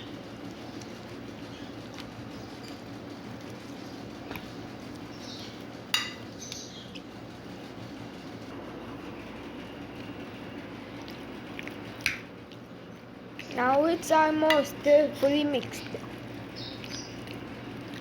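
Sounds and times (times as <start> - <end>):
wet rustling of mixing meat: 9.8 - 18.0.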